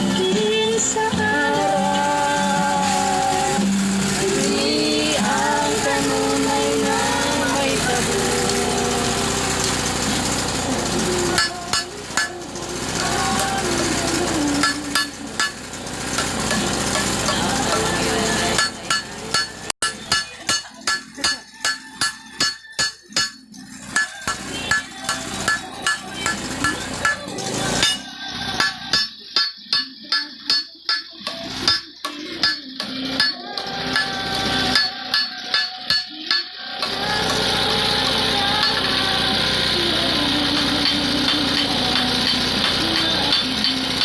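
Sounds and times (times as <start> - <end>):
steady machine noise: 0.0 - 44.0
hammer striking metal on anvil: 11.4 - 12.4, 14.6 - 15.6, 16.2 - 37.5.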